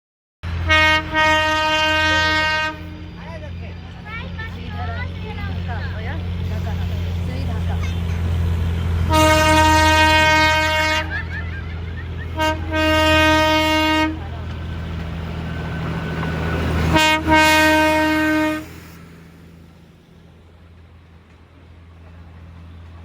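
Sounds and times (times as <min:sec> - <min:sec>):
train horn blasts: 0:00.4 - 0:03.4, 0:09.0 - 0:14.6, 0:16.5 - 0:19.0.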